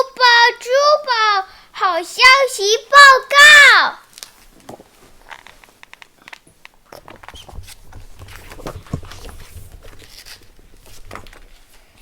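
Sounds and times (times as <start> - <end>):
light rustling: 4.1 - 12.0.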